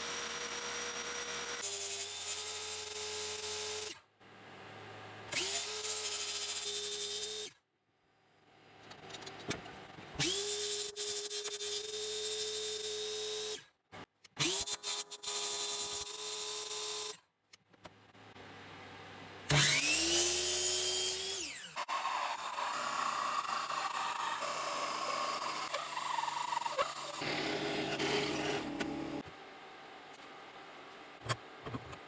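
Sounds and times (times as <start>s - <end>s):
power tool motor whining: 19.5s - 29.2s
power tool working roughly: 19.5s - 29.2s.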